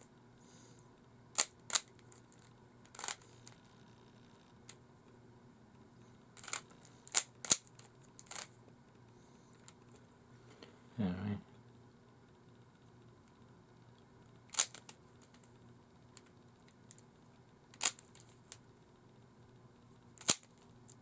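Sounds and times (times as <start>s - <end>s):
plastic cube clicks: 1.4s - 1.9s, 6.4s - 8.5s, 14.5s - 15.5s, 17.8s - 18.3s, 20.2s - 20.6s.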